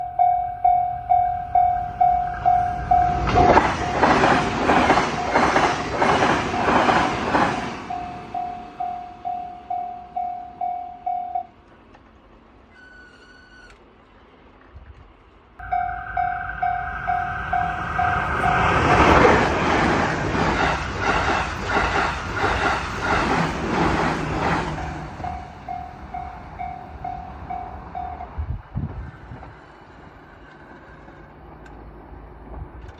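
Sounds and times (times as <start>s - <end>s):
level-crossing bell ringing: 0.0s - 4.3s, 7.8s - 11.5s, 15.6s - 19.6s, 24.8s - 28.4s
train wheels clattering on rails: 1.0s - 10.7s, 14.6s - 32.9s.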